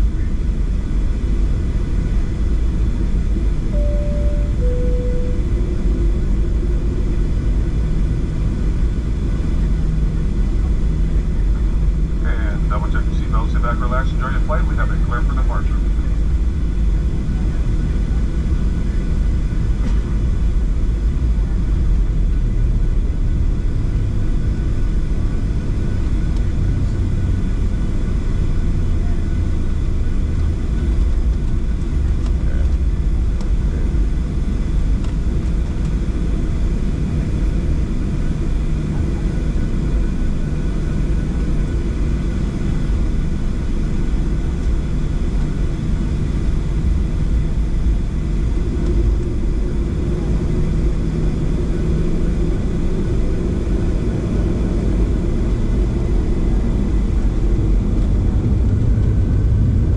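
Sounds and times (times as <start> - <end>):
jet engines rumbling: 0.0 - 59.9
faint high engine tones: 3.1 - 21.6.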